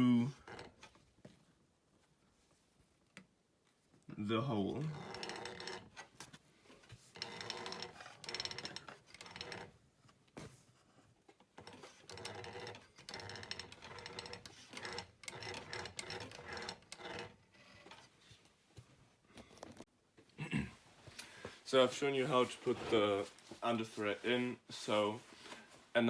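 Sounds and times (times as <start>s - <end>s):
industrial sewing machine running: 4.9s - 5.9s, 7.1s - 9.7s, 11.6s - 17.9s.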